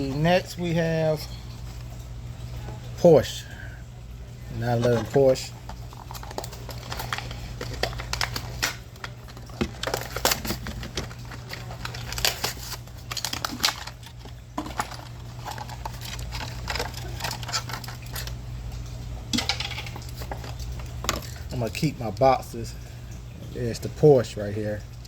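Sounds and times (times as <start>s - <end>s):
packaging crinkling and tearing: 4.8s - 18.4s.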